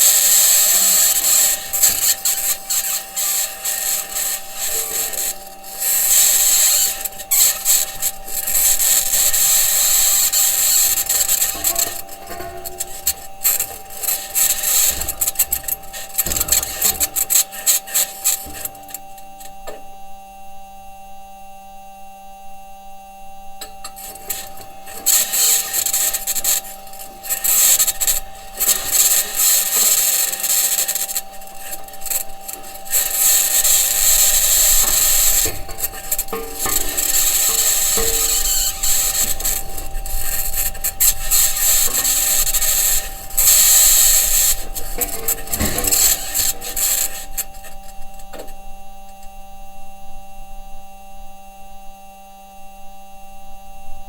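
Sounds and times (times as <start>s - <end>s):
high-pitched scratching noise: 0.0s - 19.0s, 24.0s - 48.1s
rover wheels grinding and clattering: 0.0s - 19.9s, 23.6s - 49.4s
steady hum: 0.0s - 54.0s.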